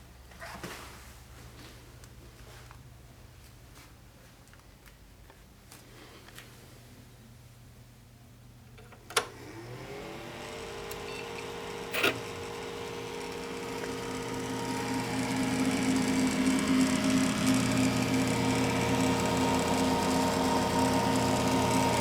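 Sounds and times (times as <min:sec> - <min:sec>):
computer fans whirring: 0:09.2 - 0:22.0
computer hum: 0:10.6 - 0:22.0
computer switch click: 0:11.9 - 0:12.3.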